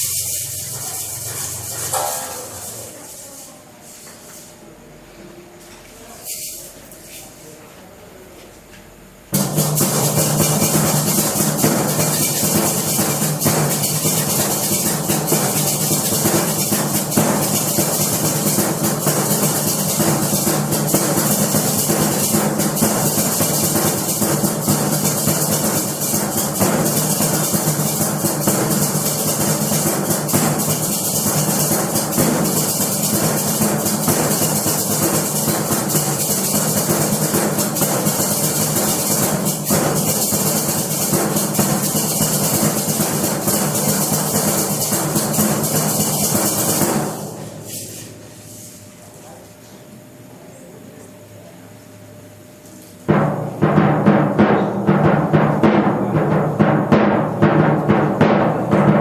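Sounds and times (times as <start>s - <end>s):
drums: 0.0s - 4.6s, 9.1s - 48.8s, 53.0s - 59.0s
shaker rattle: 0.0s - 4.8s, 5.6s - 7.7s, 9.3s - 49.2s.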